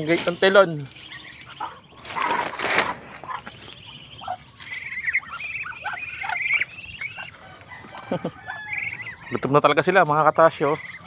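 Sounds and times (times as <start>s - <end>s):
rustling noise: 0.0s - 3.8s
chickens calling: 0.0s - 11.0s.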